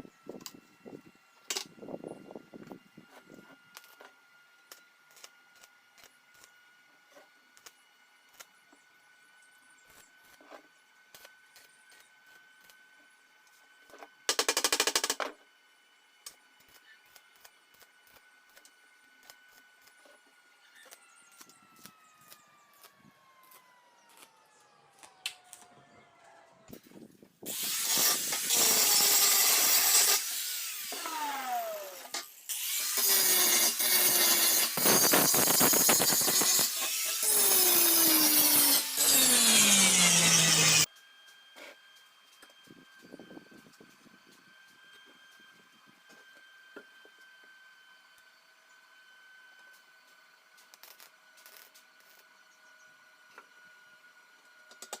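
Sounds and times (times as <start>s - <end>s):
power tool grinding steel: 27.5s - 40.9s.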